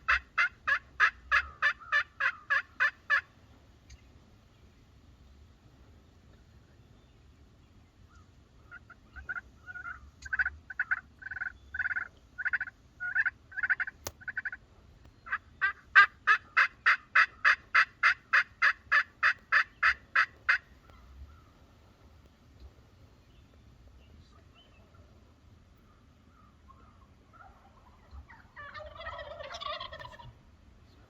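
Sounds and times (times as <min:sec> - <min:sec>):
turkey yelps: 0:00.0 - 0:03.3, 0:08.1 - 0:14.6, 0:15.3 - 0:21.5, 0:25.9 - 0:30.4.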